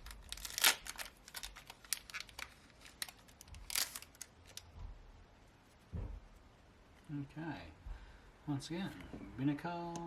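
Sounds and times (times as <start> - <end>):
foil wrapper crinkling and tearing: 0.0 - 4.7.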